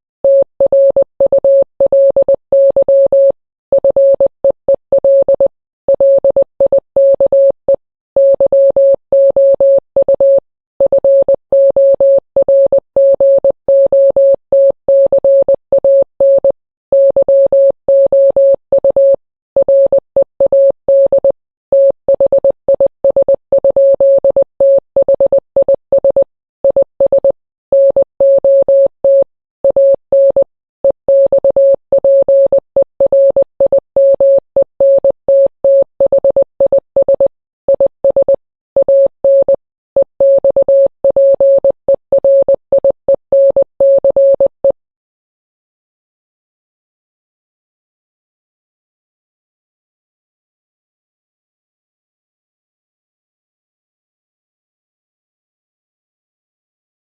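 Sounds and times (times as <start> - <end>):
morse code beeps: 0.3 - 44.8.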